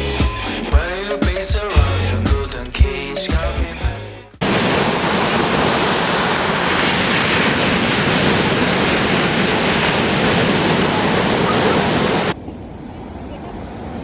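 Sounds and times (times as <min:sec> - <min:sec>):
music: 0:00.0 - 0:04.4
sea surf: 0:04.4 - 0:14.0
wind: 0:04.4 - 0:14.0.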